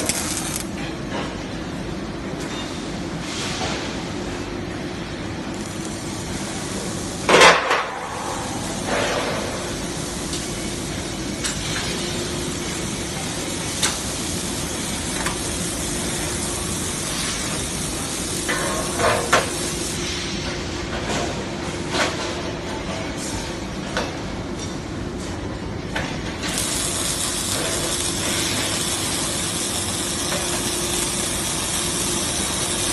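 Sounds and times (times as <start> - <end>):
welding machine hissing: 0.0 - 0.8, 5.3 - 20.2, 26.4 - 32.9
constant hum: 0.0 - 32.9.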